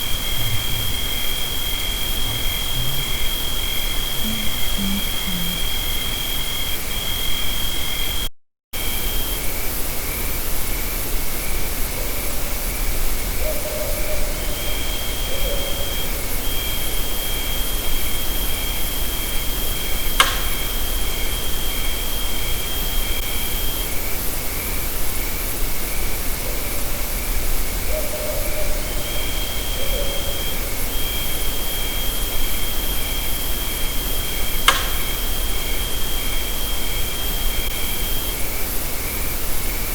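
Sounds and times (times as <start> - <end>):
faint short low sounds: 0.0 - 1.6, 2.2 - 6.0
loud steady hiss: 0.0 - 8.0
fast high pulsing trill: 4.2 - 5.8
thin high steady tone: 4.2 - 5.9
sharp clicks: 34.7 - 35.0.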